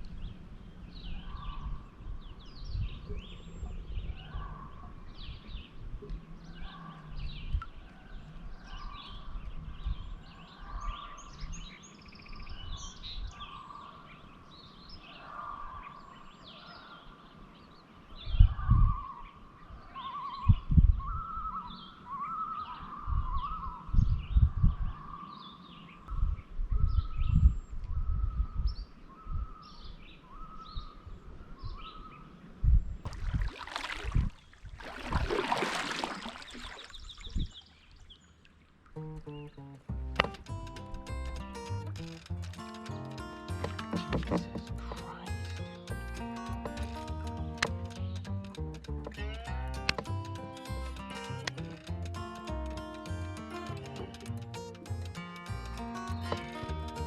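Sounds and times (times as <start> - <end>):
birds chirping: 0.0 - 27.4, 33.1 - 57.0
warbling trilled birdsong: 0.0 - 57.0
low rumbles or bumps: 39.0 - 51.0.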